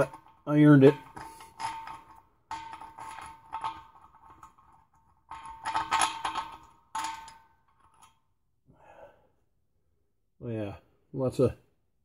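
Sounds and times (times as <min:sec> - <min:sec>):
metal clinking and scraping: 0:00.0 - 0:08.4.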